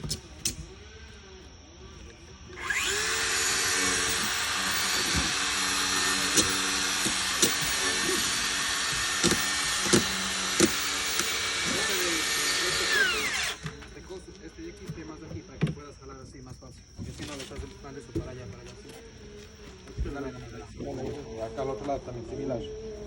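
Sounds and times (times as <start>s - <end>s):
power tool running: 2.5s - 14.0s.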